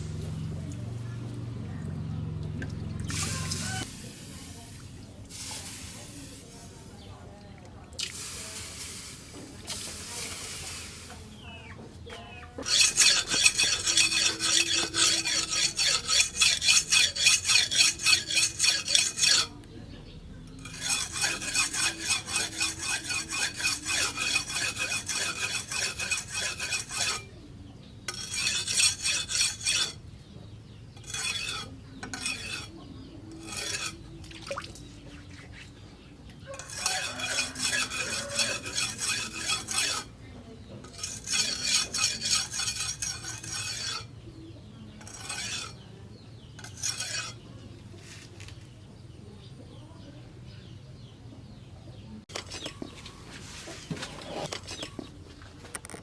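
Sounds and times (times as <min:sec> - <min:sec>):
knife blade sharpening strokes: 0:12.6 - 0:19.5, 0:20.6 - 0:27.3, 0:28.1 - 0:30.0, 0:31.0 - 0:32.7, 0:33.4 - 0:34.0, 0:36.6 - 0:40.1, 0:40.9 - 0:44.1, 0:45.0 - 0:45.8, 0:46.6 - 0:47.4.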